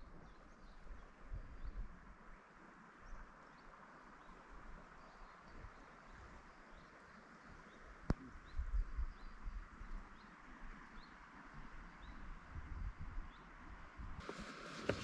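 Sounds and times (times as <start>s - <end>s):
faint rushing hiss: 14.2s - 15.0s.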